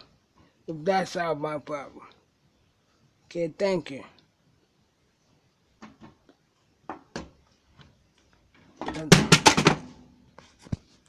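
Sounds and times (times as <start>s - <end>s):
handling knocks and clicks: 8.8s - 10.0s.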